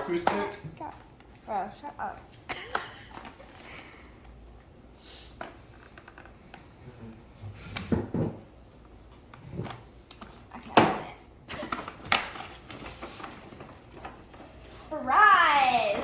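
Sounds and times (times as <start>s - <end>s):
gift wrapping rustling: 11.6s - 16.0s.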